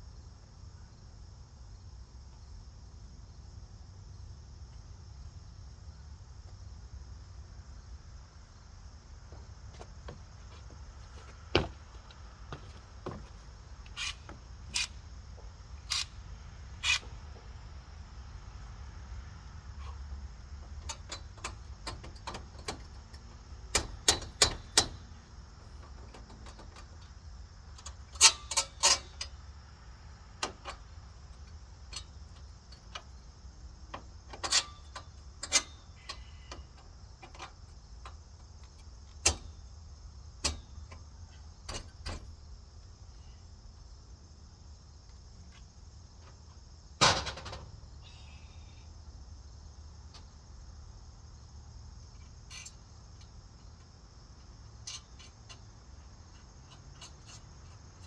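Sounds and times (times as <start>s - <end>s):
knocks and clanks on metal: 11.5s - 11.9s, 20.7s - 27.1s.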